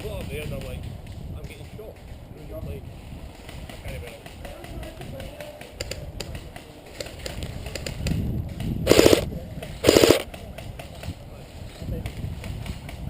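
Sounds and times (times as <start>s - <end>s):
airsoft rifle automatic burst: 8.9s - 10.3s.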